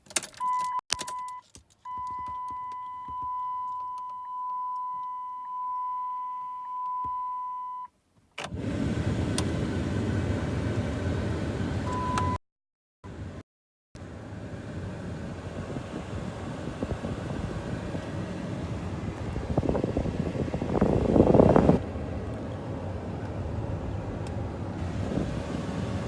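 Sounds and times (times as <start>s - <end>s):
blower fan rushing air: 14.1s - 26.0s.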